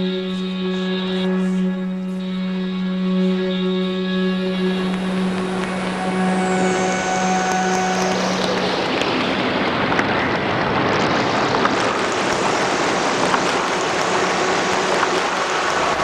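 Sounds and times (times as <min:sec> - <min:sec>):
distorted synthesizer noise: 0:00.0 - 0:16.0
faint clicks: 0:04.6 - 0:16.0.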